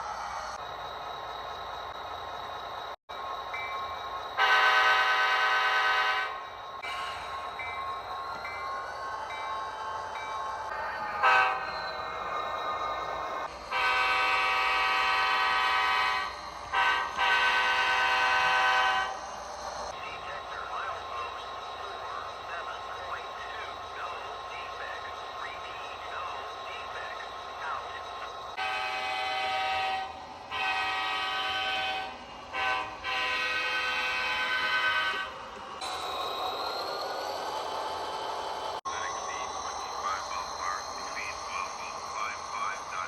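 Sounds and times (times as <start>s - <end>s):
diesel locomotive sound from small speaker: 0.0s - 43.0s
model locomotive air horn blasts: 4.4s - 6.4s, 13.7s - 19.1s, 28.6s - 35.3s.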